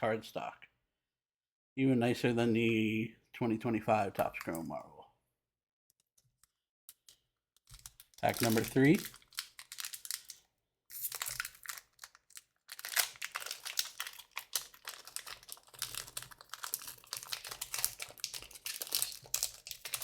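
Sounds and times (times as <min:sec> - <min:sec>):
foil wrapper crinkling and tearing: 0:07.6 - 0:20.0.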